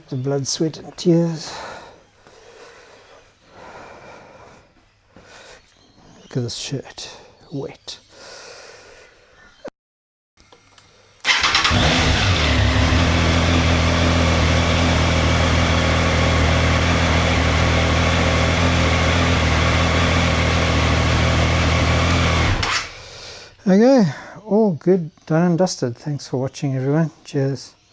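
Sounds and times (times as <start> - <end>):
motorcycle engine starting and idling: 11.2 - 23.3.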